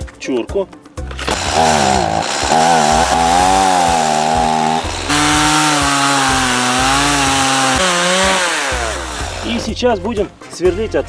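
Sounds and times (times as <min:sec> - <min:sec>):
chainsaw cutting through log: 0:01.0 - 0:09.7.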